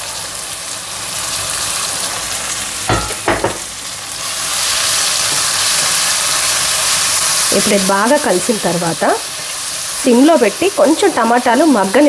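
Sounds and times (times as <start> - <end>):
food sizzling in a pan: 0.0 - 12.0.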